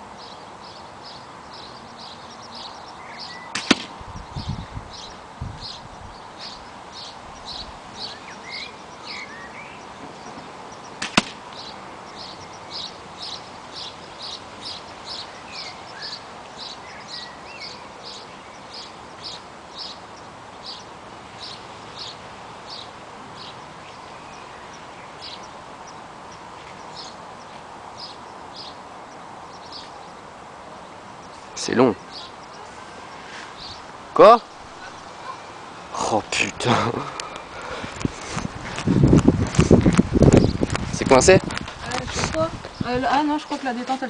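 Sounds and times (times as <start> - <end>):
airsoft rifle firing: 3.6 - 3.9.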